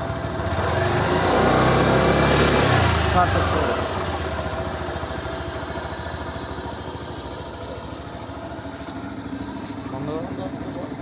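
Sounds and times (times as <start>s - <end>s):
scooter engine idling: 0.0s - 11.0s.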